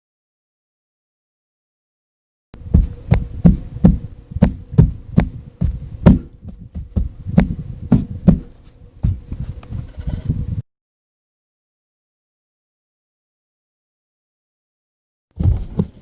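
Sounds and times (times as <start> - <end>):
heavy thumps and knocks: 2.6 - 10.4, 15.4 - 16.0
faint steady hum: 2.6 - 10.6.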